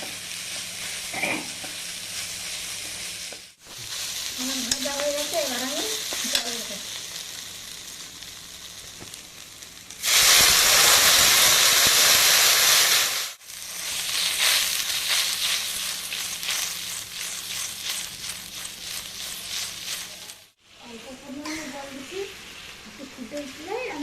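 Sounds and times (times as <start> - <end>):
spices sizzling in hot oil: 0.0 - 24.0
spluttering sizzle with crackles: 0.0 - 24.0
loud hiss of steam: 10.0 - 13.5.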